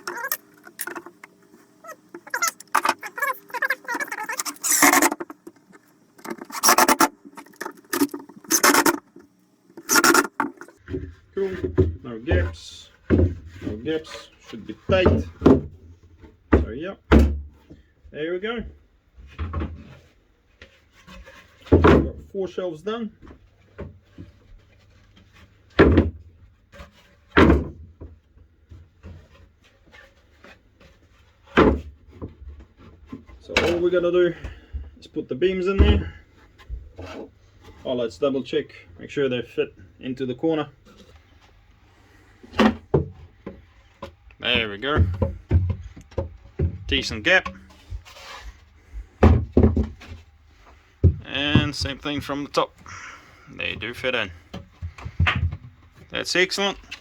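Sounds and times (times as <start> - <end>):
shelf pieces scraping together: 0.0 - 10.8, 40.8 - 57.0
light wooden clunks: 42.4 - 56.2.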